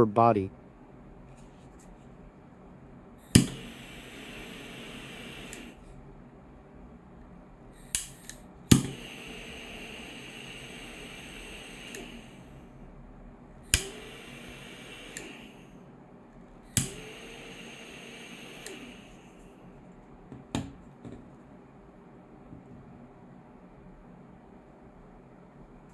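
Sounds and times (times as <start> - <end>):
torch flame hissing: 3.1 - 6.2, 7.6 - 13.0, 13.6 - 15.8, 16.5 - 19.8
lighter trigger click: 3.3 - 5.8, 7.8 - 12.5, 13.6 - 15.6, 16.7 - 17.6.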